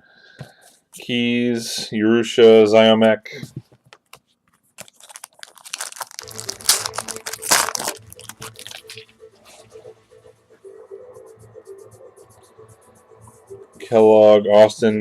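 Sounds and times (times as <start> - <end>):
foil wrapper tearing and crinkling: 4.8 - 9.0
background music: 5.5 - 15.0.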